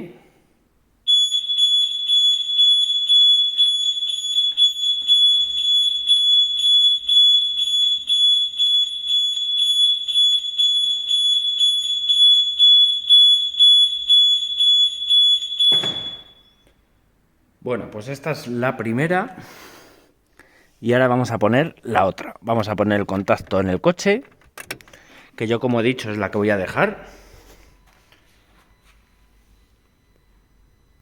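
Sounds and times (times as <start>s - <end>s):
car alarm siren: 1.1s - 16.5s.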